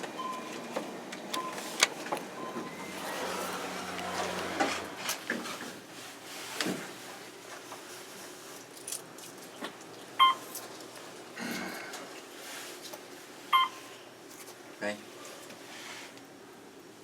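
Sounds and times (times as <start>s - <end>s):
elevator chime dinging: 2.4s - 4.6s.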